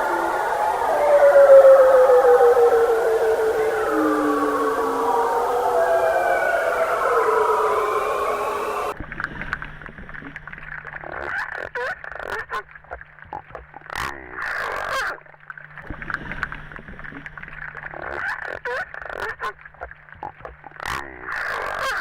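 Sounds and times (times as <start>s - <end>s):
seal calls: 0.0s - 9.0s
steady low hum: 0.0s - 9.0s.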